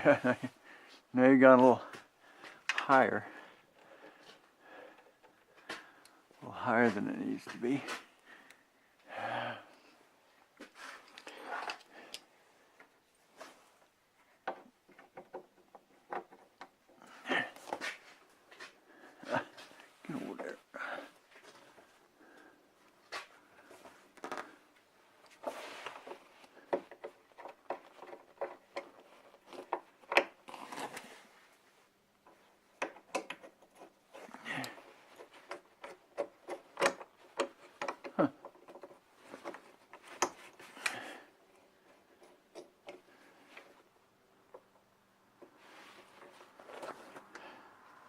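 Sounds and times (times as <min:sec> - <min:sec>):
hands clicking and knocking parts: 0:01.9 - 0:03.0, 0:03.6 - 0:06.2, 0:10.6 - 0:13.1, 0:13.8 - 0:20.6, 0:22.9 - 0:31.1, 0:32.2 - 0:48.0.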